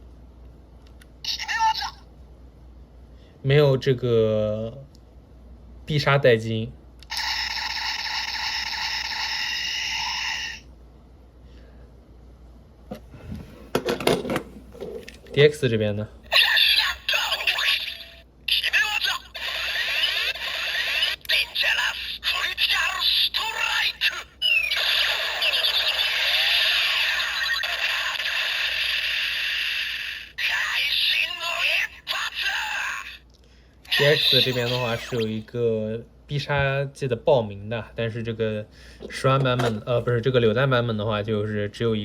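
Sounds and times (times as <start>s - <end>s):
buzzing electronic toy sound: 7.1s - 10.7s, 16.3s - 18.2s, 18.9s - 33.2s, 33.9s - 35.4s.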